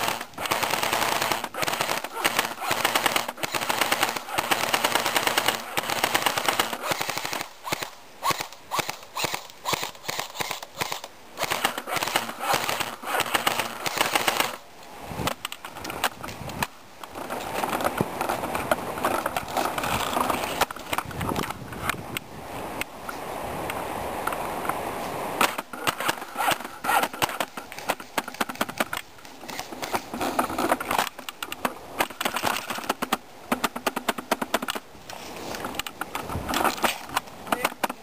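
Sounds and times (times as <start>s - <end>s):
airsoft guns firing: 0.0s - 14.6s
voices: 37.4s - 38.0s.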